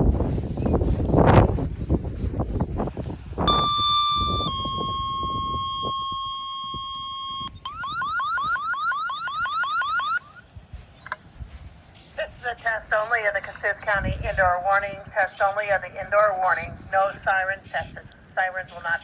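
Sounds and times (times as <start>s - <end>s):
wind noise on microphone: 0.0s - 19.0s
rising warble tone: 3.4s - 10.4s
radio alert tones: 3.5s - 10.4s.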